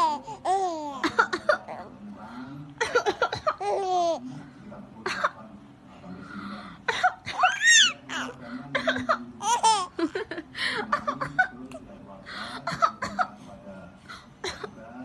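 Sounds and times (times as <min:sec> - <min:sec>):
woman coughing: 0:02.8 - 0:03.6, 0:12.7 - 0:13.3
baby laughing and squealing: 0:07.4 - 0:08.3.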